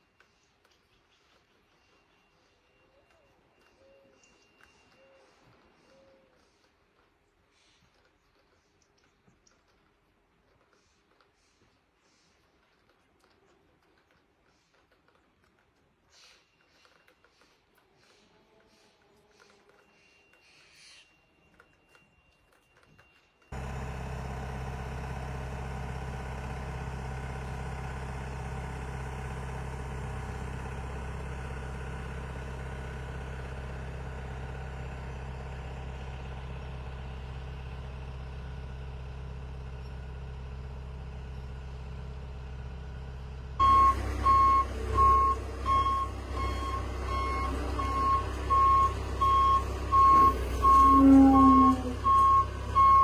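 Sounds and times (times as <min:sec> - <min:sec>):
heavy vehicle engine running: 0:23.5 - 0:53.0
reversing alarm beeping: 0:43.6 - 0:53.0.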